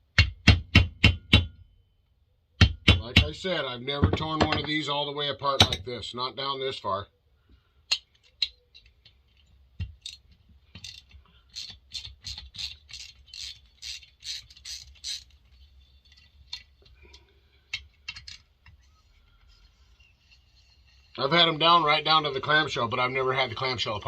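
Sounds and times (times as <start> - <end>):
tools and parts clicking: 7.8 - 19.5
ratchet wrench clicking: 10.8 - 15.4.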